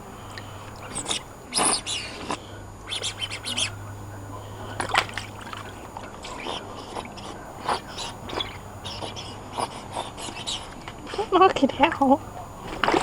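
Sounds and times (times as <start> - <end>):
dog splashing in water: 0.0 - 11.2, 11.9 - 13.0.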